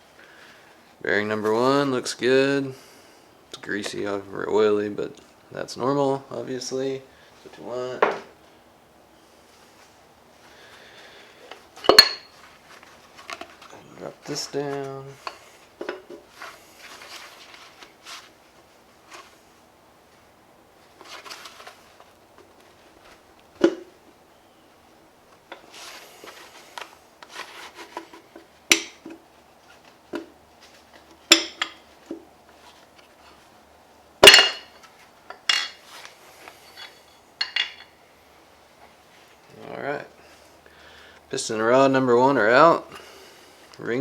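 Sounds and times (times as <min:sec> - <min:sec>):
metal tools clanking: 0:11.8 - 0:12.4, 0:34.2 - 0:35.9, 0:36.6 - 0:38.0.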